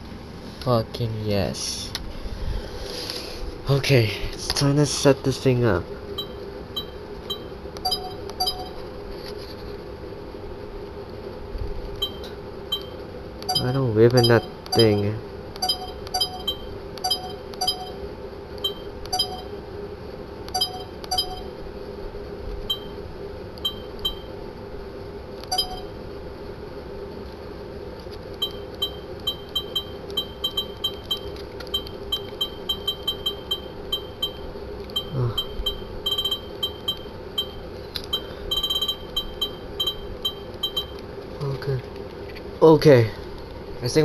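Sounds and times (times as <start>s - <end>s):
steady low hum: 0.0s - 44.0s
short electronic beeps: 6.2s - 8.8s, 12.0s - 18.0s, 18.6s - 19.5s, 22.7s - 23.0s, 25.5s - 25.9s, 28.4s - 41.0s.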